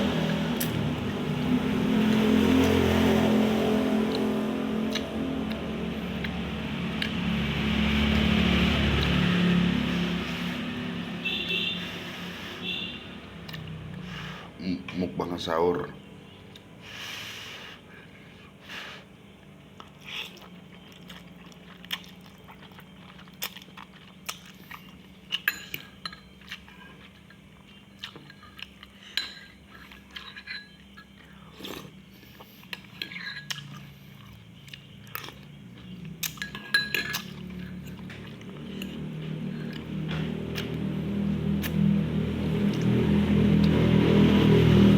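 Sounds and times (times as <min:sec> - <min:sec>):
person chewing: 0:00.0 - 0:03.2, 0:04.0 - 0:10.7, 0:13.4 - 0:14.5, 0:19.4 - 0:44.9
cutlery clinking against bowl: 0:25.3 - 0:26.6, 0:28.2 - 0:31.1, 0:36.2 - 0:39.0.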